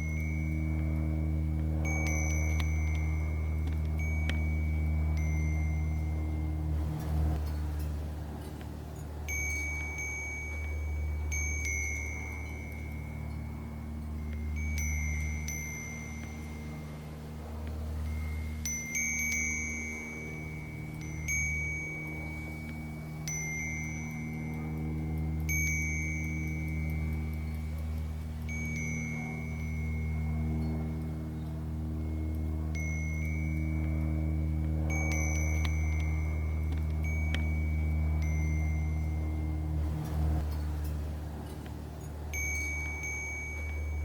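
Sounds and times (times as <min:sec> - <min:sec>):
steady low hum: 0:00.0 - 0:44.0
wind chime ringing: 0:00.0 - 0:44.0.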